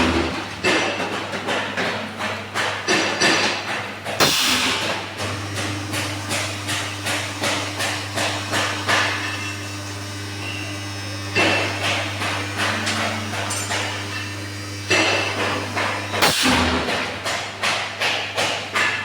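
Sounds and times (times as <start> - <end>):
loud clank: 4.2 - 5.1, 11.4 - 17.1
electrical hum: 4.2 - 17.2
welding machine sharp ticks: 4.2 - 18.2.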